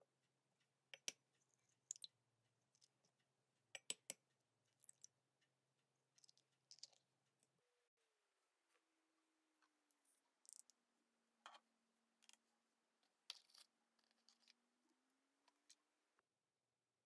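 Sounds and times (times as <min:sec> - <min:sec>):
clicks of small hard objects: 0:13.3 - 0:14.6.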